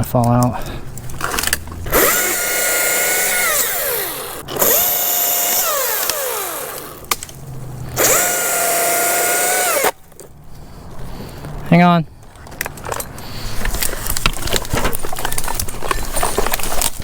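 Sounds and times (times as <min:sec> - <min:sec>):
chainsaw cutting wood: 0:01.9 - 0:10.0.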